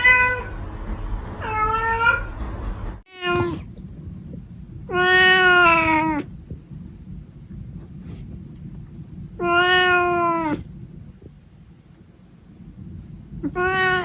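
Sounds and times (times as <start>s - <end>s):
cat meowing: 0.0s - 0.6s, 1.4s - 2.3s, 4.9s - 6.3s, 9.4s - 10.7s, 13.4s - 14.0s.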